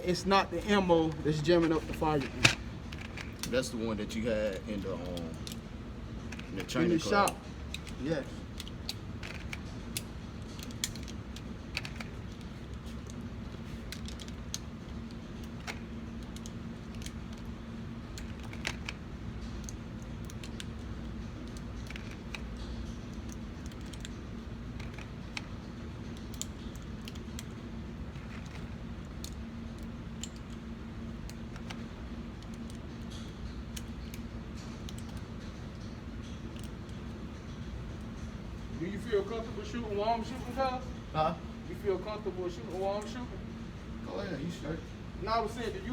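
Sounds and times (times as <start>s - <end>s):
metallic cartridge clicks: 0.6s - 3.7s.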